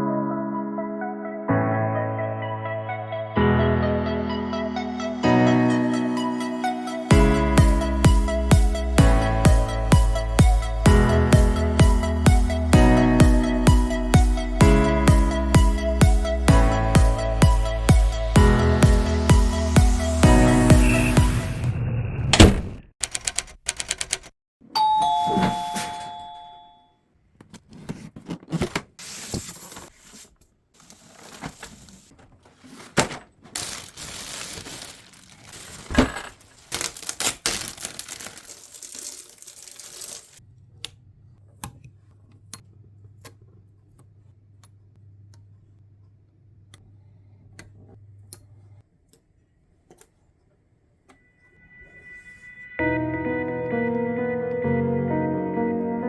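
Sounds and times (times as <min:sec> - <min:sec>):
two-note doorbell chime: 0:24.8 - 0:26.9
packing box being opened: 0:27.5 - 0:40.4.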